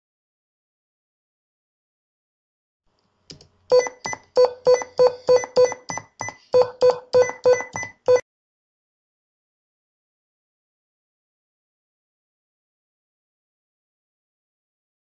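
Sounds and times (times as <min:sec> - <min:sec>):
short electronic beeps: 0:03.7 - 0:08.2.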